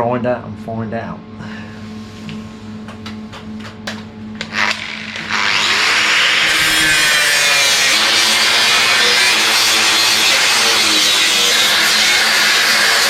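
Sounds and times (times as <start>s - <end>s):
angle grinder grinding metal: 4.4s - 13.0s.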